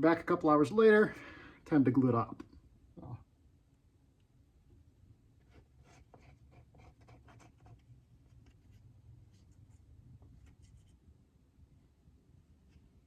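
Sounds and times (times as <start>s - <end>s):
faint low hum: 0.0s - 13.0s
light scratching: 5.4s - 11.0s.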